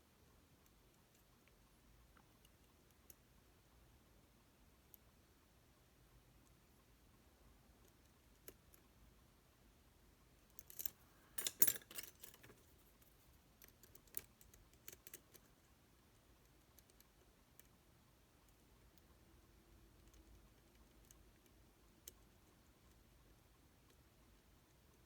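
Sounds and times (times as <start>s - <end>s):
lock picks clicking and rattling: 10.5s - 12.6s.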